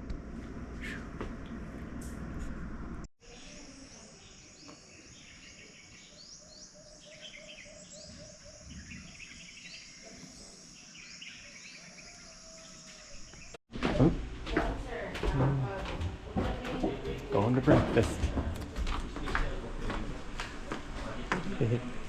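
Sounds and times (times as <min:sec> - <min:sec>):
birds chirping: 0:03.2 - 0:14.1.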